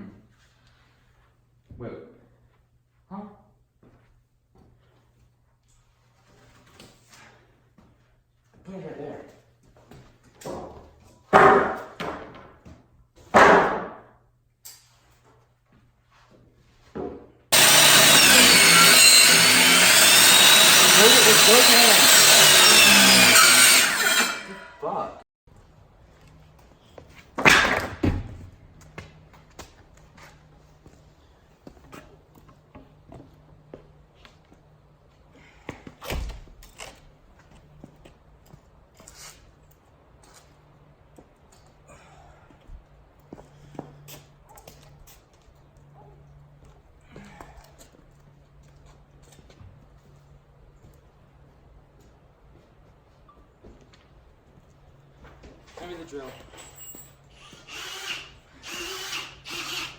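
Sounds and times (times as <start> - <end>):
wooden boards thudding: 13.3 - 14.0, 27.4 - 28.4.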